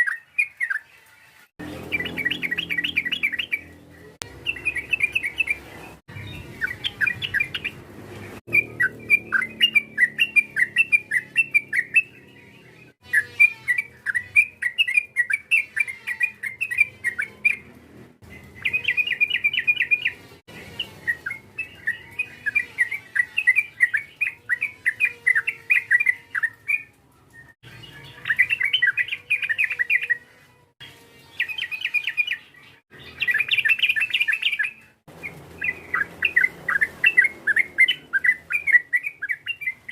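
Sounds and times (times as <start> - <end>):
bird singing chattering phrases: 31.4 - 39.9.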